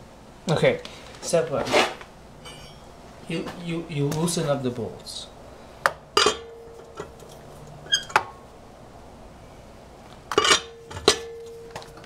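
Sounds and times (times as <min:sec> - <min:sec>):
metallic ring: 0:02.4 - 0:03.0, 0:06.2 - 0:07.2, 0:10.3 - 0:11.8
lug wrench clanking on lug nuts: 0:05.9 - 0:08.4, 0:10.2 - 0:12.0.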